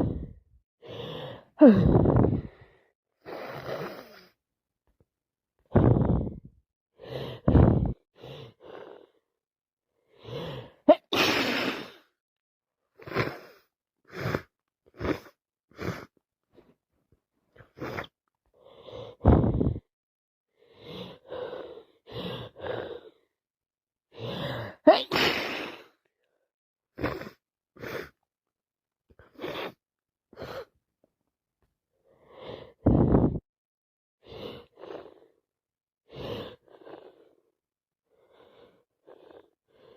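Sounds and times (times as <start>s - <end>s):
gasping breaths: 0.0s - 4.4s, 5.7s - 9.2s, 20.6s - 23.3s
woman sneezing: 10.9s - 11.9s, 24.9s - 25.8s
sniffing: 27.0s - 28.2s.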